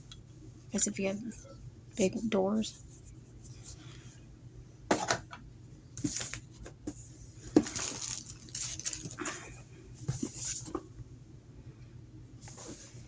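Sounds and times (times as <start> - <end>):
plastic packaging rustling: 6.0 - 6.5, 7.4 - 9.5.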